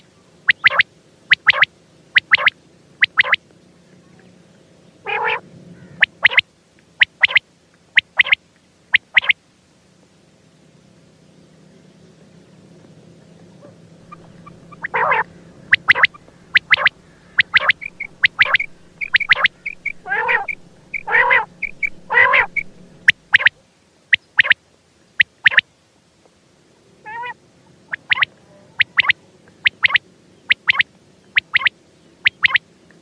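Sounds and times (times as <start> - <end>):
quail calling: 0.0 - 3.4, 5.0 - 7.4, 8.0 - 9.4, 13.6 - 24.6, 25.2 - 25.6, 27.0 - 32.6.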